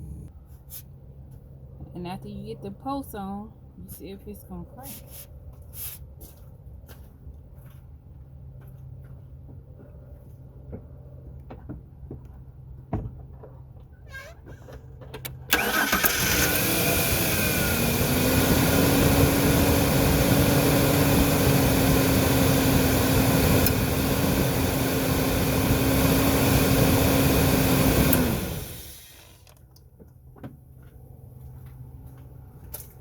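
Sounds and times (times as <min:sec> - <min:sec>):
engine running steadily: 0:00.0 - 0:00.4, 0:06.6 - 0:33.0
engine starter cranking: 0:15.3 - 0:18.2, 0:28.0 - 0:29.6.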